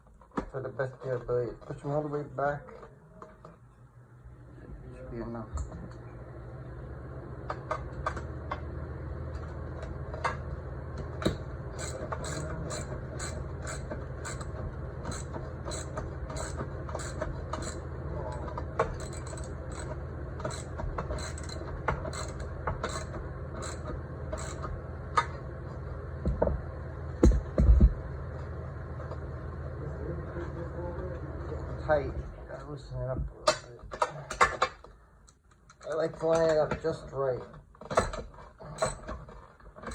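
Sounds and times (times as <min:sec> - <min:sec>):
ratchet wrench clicking: 0:11.8 - 0:14.5, 0:18.9 - 0:19.9, 0:20.5 - 0:23.8, 0:24.4 - 0:24.6.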